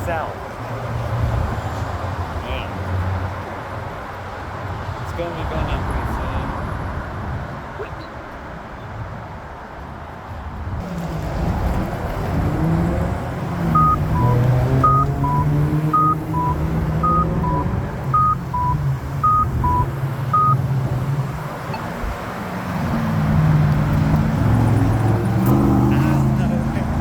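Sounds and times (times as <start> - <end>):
traffic with engines accelerating: 0.0 - 27.0
pedestrian signal beeping: 13.7 - 20.7, 21.4 - 22.1.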